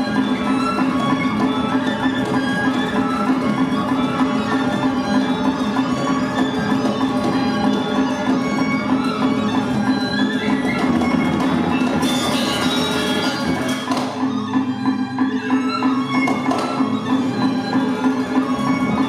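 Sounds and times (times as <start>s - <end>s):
gamelan music: 10.6s - 13.9s.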